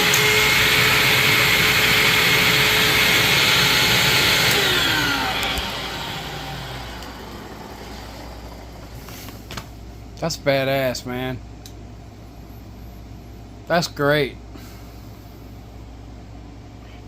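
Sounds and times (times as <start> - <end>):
vacuum cleaner motor whine: 0.0 - 9.4.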